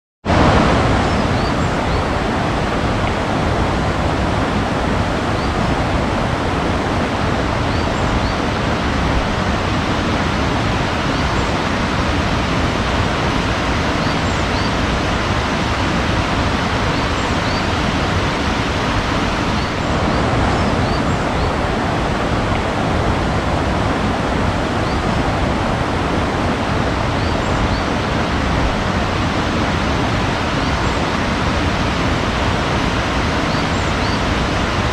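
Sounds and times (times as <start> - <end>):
rushing water: 0.2 - 34.9
faint high bird chirps: 33.5 - 34.2.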